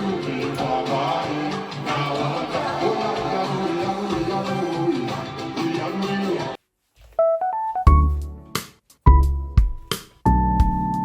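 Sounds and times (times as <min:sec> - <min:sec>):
held music chords: 0:07.1 - 0:11.0.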